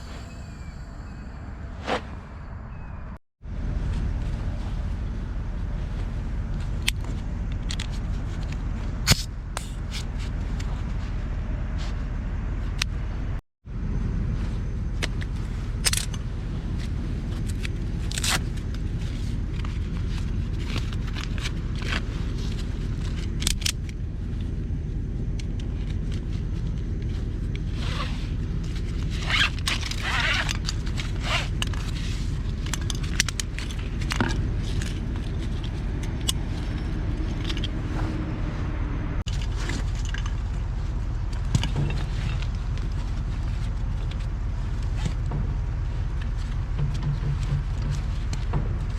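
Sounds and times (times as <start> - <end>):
ratchet strap clicks and scrapes: 27.0 - 37.8
diesel tractor idling: 31.8 - 48.9.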